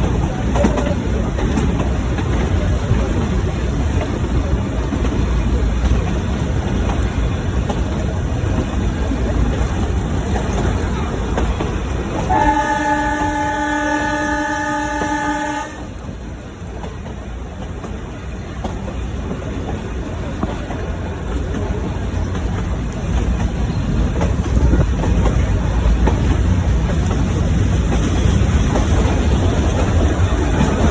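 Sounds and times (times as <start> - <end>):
train running rumble: 0.0 - 30.9
train horn blast: 12.2 - 16.0.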